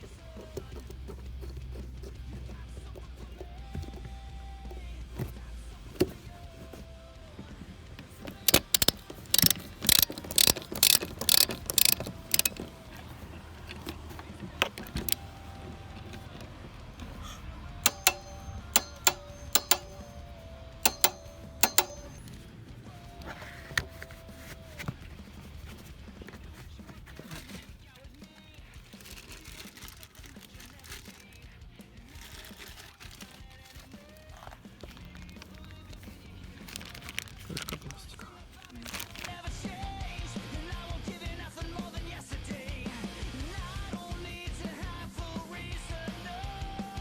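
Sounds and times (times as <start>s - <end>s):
sharp mechanical clicks: 8.0s - 22.4s.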